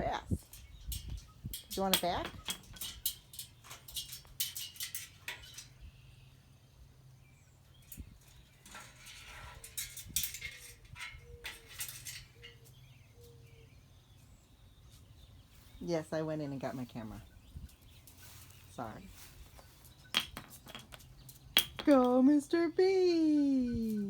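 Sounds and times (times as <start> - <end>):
cockatoo beak clicking on metal: 0.4 - 5.6.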